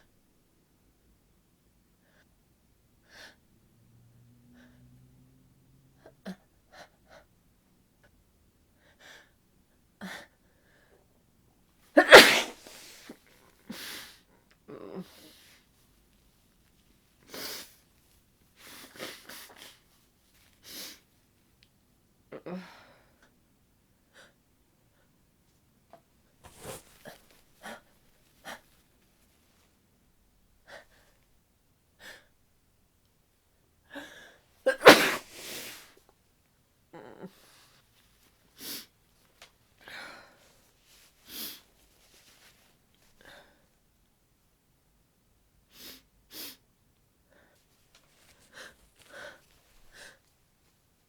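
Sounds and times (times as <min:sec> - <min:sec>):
woman sneezing: 0:12.0 - 0:13.1, 0:34.7 - 0:35.8
woman sniffing congestedly: 0:12.0 - 0:14.2, 0:26.5 - 0:27.8, 0:34.7 - 0:36.0, 0:41.2 - 0:41.7, 0:45.7 - 0:46.6.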